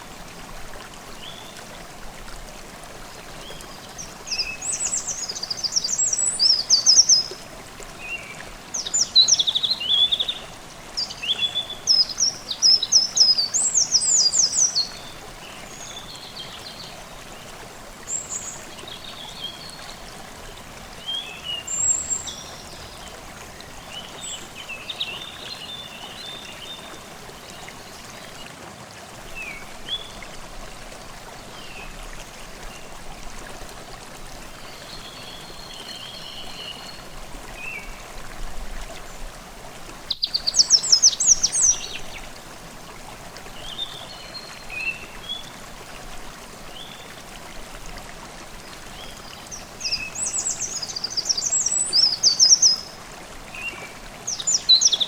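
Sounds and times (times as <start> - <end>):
stream babbling: 0.0 - 55.0
songbirds singing: 8.0 - 17.4, 21.0 - 28.4, 40.1 - 42.3, 48.7 - 55.0.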